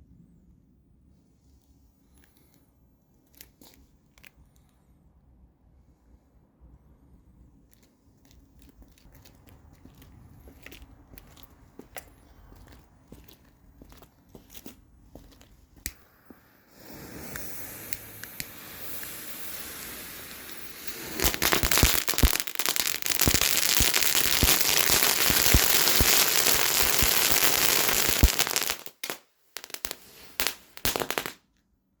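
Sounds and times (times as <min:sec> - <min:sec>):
fuse hissing as it burns: 0:15.8 - 0:31.4
loud crackling with sharp pops: 0:16.8 - 0:31.4.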